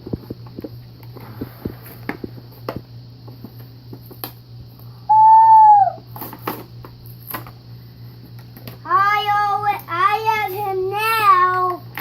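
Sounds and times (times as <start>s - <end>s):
hooted note: 5.1s - 6.0s.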